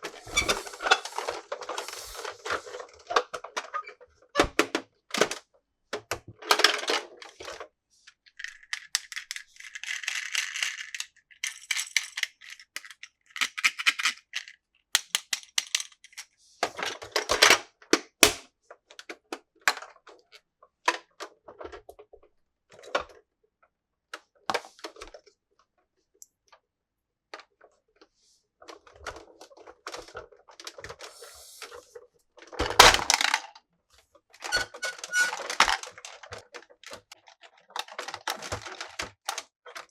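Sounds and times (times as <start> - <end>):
packaging rustling: 0.0 - 2.8
plastic toys clattering: 0.0 - 5.4, 6.0 - 7.7, 8.3 - 17.6, 28.7 - 33.6, 34.3 - 39.9
plastic toys clicking and knocking: 0.0 - 7.7, 8.3 - 22.1, 32.4 - 33.6, 34.3 - 39.9.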